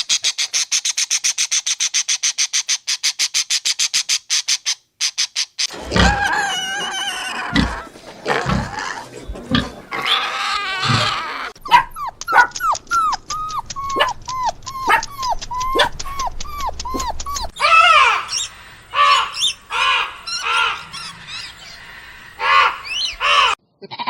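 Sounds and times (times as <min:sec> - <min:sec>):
harsh rasping animal calls: 0:05.6 - 0:24.0
short falling animal calls: 0:12.3 - 0:23.6.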